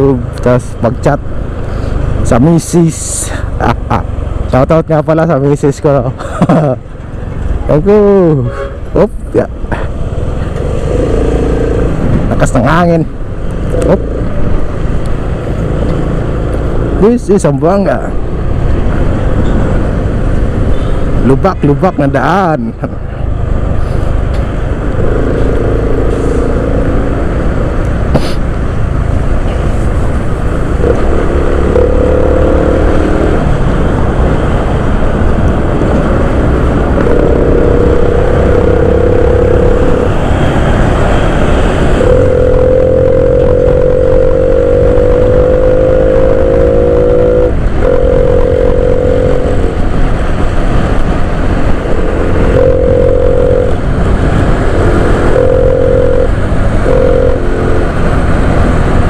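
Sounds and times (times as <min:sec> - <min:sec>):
motorcycle engine accelerating: 0:24.1 - 0:28.3, 0:30.3 - 0:59.0.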